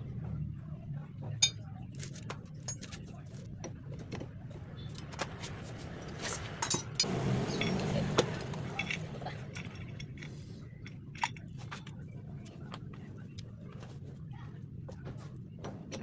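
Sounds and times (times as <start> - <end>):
metallic clinks of hand tools: 6.6 - 11.8.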